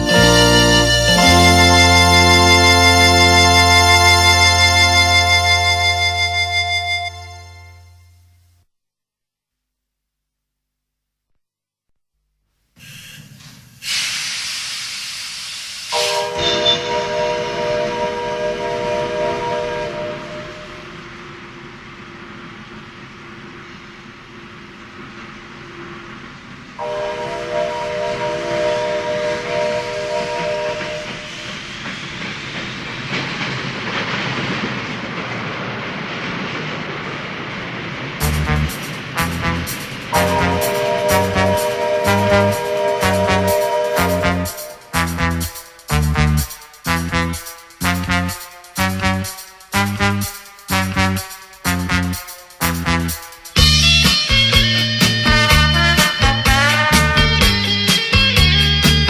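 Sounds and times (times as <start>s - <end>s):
chime whistle of steady tones: 0.0s - 8.4s, 16.0s - 20.9s
keyboard train sound effect: 0.0s - 8.6s, 15.9s - 59.0s
steam-like hiss: 12.8s - 57.1s.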